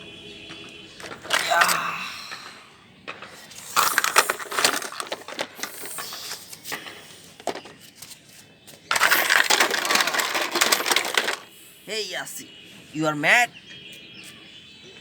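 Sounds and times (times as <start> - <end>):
vehicles crashing and crunching: 0.0 - 12.6.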